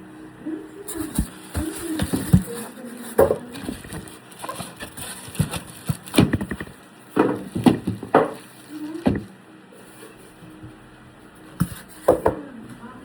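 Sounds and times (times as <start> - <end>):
knocks taps and scrapes: 0.9 - 8.4, 11.6 - 12.4.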